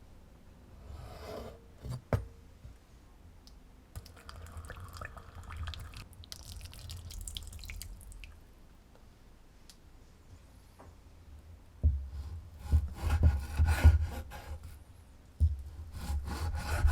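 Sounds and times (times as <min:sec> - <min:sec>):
water splashing and dripping: 0:04.0 - 0:08.4.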